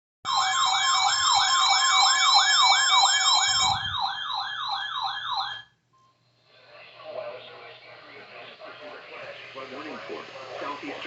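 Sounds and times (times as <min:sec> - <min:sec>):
electronic whooping siren alarm: 0:00.2 - 0:05.8
steady alarm tone: 0:00.2 - 0:05.8.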